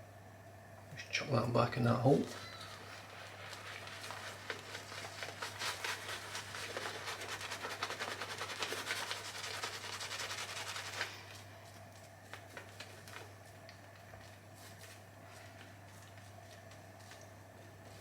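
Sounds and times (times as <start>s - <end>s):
low electrical hum: 0.0s - 18.0s
shaving brush squishing lather: 2.6s - 13.2s.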